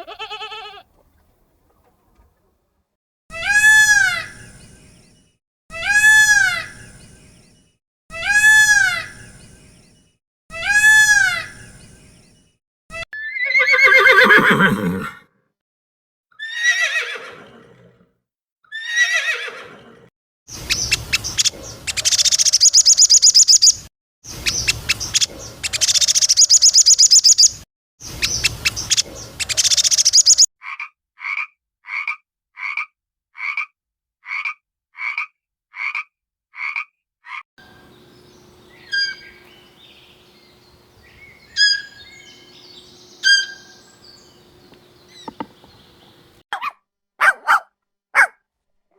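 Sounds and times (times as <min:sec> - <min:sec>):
chirps: 0:20.5 - 0:30.5, 0:37.6 - 0:46.4
short evenly spaced animal calls: 0:20.7 - 0:23.8, 0:25.1 - 0:27.5, 0:28.3 - 0:33.7, 0:37.6 - 0:46.4
rapidly pulsed croaking calls: 0:29.0 - 0:30.5, 0:37.6 - 0:46.4
faint hum: 0:37.6 - 0:46.4
short falling animal calls: 0:37.7 - 0:46.4.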